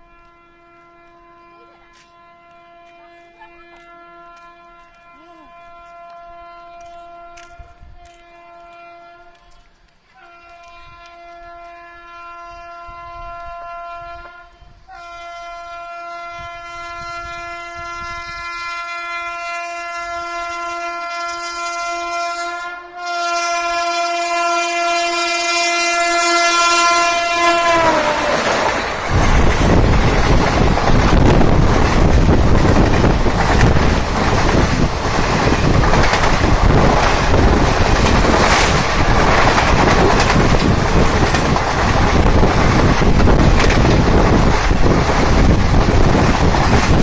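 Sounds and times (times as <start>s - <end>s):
locomotive horn blasts: 0.0s - 47.0s
rush of train speeding by: 26.8s - 47.0s.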